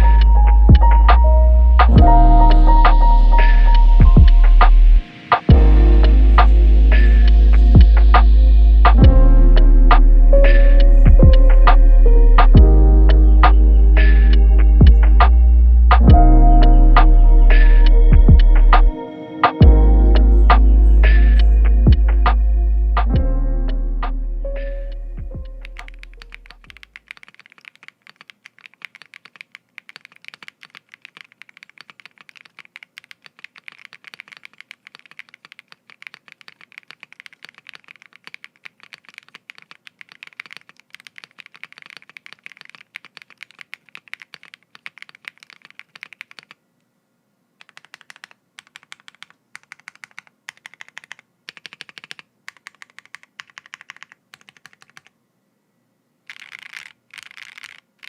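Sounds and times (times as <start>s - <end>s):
mechanical keyboard typing: 17.0s - 19.8s, 24.7s - 46.6s, 47.6s - 55.1s, 56.3s - 58.0s.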